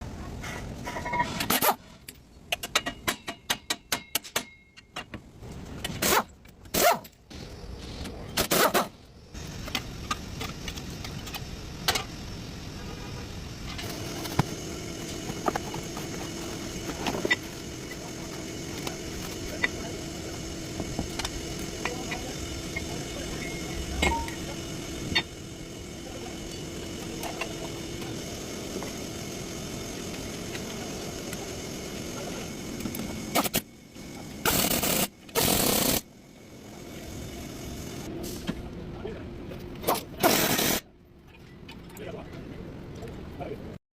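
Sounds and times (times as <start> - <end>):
truck engine humming: 9.2 - 35.4
low held tone: 14.2 - 28.8.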